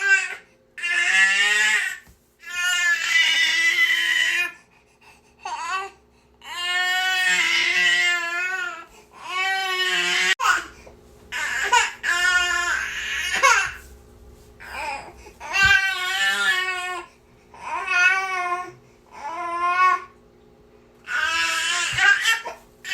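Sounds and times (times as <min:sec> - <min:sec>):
infant crying: 0:05.4 - 0:10.7, 0:11.3 - 0:13.8, 0:14.6 - 0:20.1, 0:21.1 - 0:22.9.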